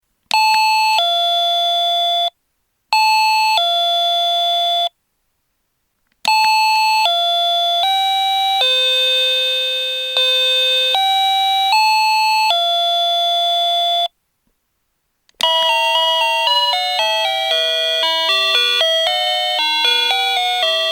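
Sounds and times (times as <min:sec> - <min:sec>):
ding-dong chime: 0:15.4 - 0:20.9
electronic chime melody: 0:15.4 - 0:20.9.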